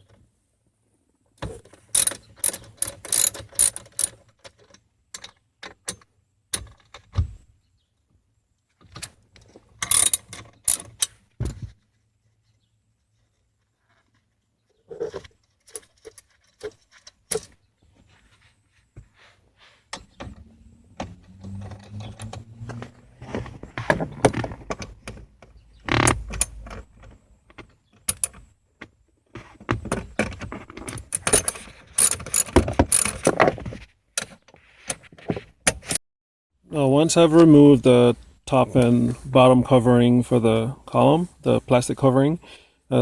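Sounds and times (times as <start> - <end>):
tools clicking and knocking: 1.4 - 7.2, 8.8 - 11.7, 15.0 - 17.6, 19.9 - 35.0.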